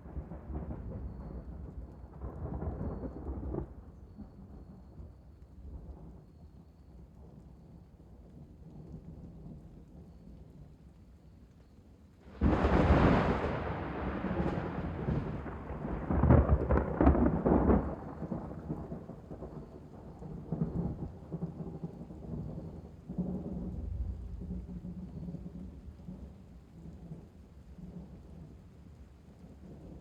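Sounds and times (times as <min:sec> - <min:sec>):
thunder rumbling: 0:12.3 - 0:28.6.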